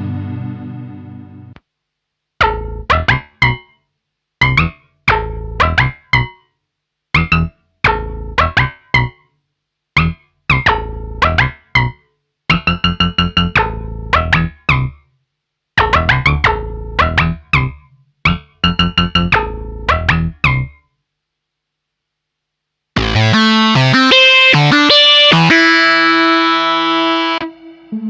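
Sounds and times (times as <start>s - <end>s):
plucky synthesizer notes: 2.4s - 3.8s, 4.4s - 6.4s, 7.2s - 9.3s, 10.0s - 15.0s, 15.8s - 20.8s, 23.0s - 27.7s.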